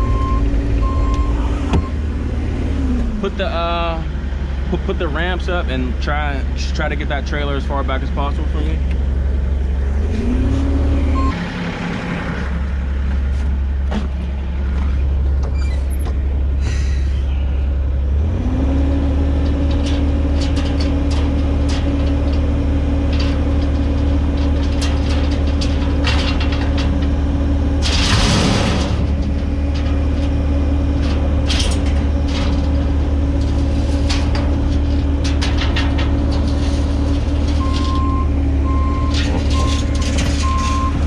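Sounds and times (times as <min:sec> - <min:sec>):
heavy engine revving: 0:00.0 - 0:13.4, 0:14.6 - 0:41.0
metal clanks: 0:19.4 - 0:41.0.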